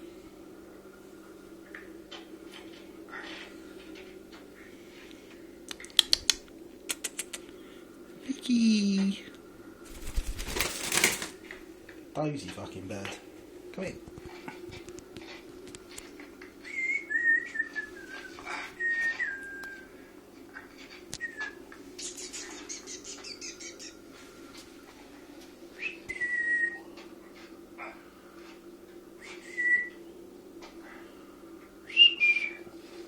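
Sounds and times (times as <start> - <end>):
cockatiel whistling: 29.2 - 30.0, 31.8 - 32.6.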